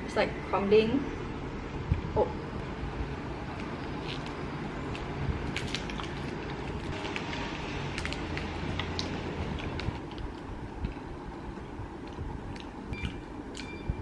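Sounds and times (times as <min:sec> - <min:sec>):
low background hum: 0:00.0 - 0:14.0
mouth chewing biscuit: 0:03.6 - 0:11.1.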